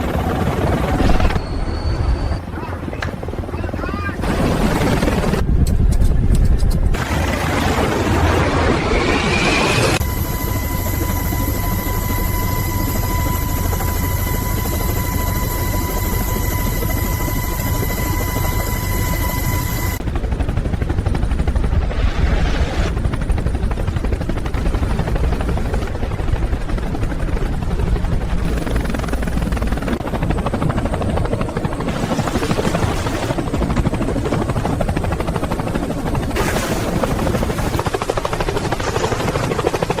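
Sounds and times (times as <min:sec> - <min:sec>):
aircraft rotor and engine noise: 0:00.0 - 0:40.0
high steady whine: 0:08.5 - 0:20.0.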